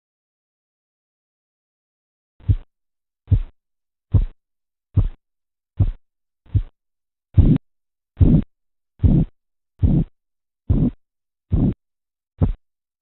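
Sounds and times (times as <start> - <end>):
pulse beats through stethoscope: 2.4 - 2.7, 3.3 - 4.4, 5.0 - 5.2, 5.8 - 6.8, 7.4 - 7.6, 8.2 - 10.1, 10.7 - 11.8, 12.4 - 12.7.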